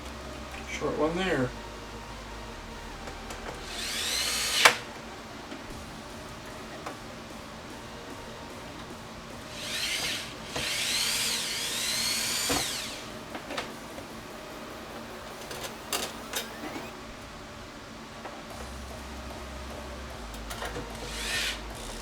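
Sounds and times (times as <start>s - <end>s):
power tool motor whirring: 3.0s - 14.6s, 15.4s - 17.0s, 20.6s - 22.0s.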